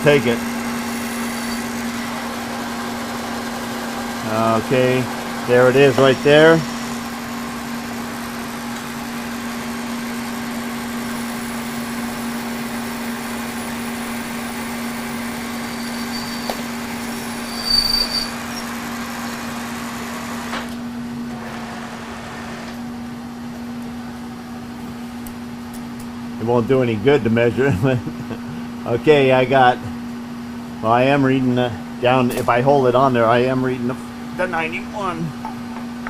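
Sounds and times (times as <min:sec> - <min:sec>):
lathe humming: 0:00.0 - 0:20.5.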